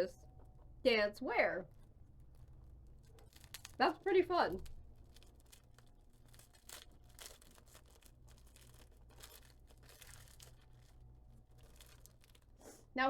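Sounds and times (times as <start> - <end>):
low steady hum: 0.0 - 13.0
plastic wrapper crinkling and tearing: 1.7 - 12.6.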